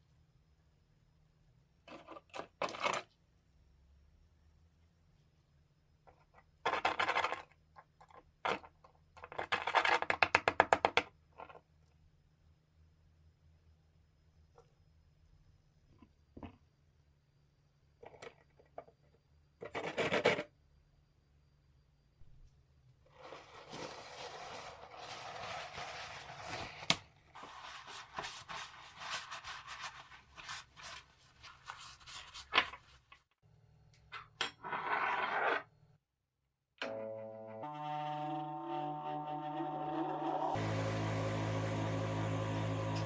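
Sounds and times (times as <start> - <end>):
hand rubbing and scraping: 23.0 - 33.3.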